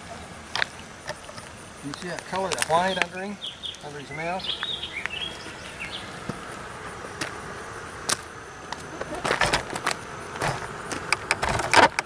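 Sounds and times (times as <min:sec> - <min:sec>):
bird chirp: 0:00.0 - 0:06.5
steady hiss: 0:00.0 - 0:12.0
sharp clicks: 0:09.5 - 0:12.0.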